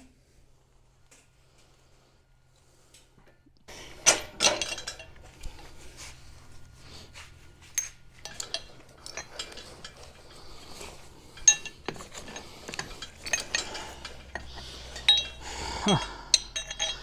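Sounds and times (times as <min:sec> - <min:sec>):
metallic clinks of tools: 0:07.7 - 0:17.0
ringing metal clank: 0:11.3 - 0:17.0.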